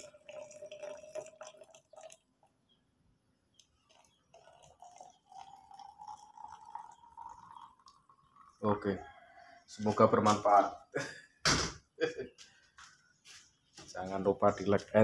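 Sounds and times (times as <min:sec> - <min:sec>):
hot water pouring into container: 0:00.0 - 0:02.4, 0:03.6 - 0:08.8.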